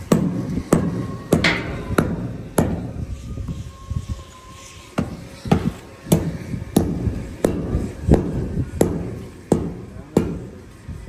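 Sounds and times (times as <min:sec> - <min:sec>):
hammer blows ringing: 0:01.3 - 0:02.9.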